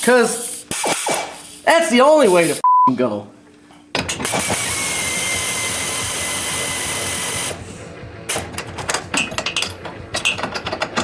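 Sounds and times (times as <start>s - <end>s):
power ratchet motor whine: 4.2s - 7.6s.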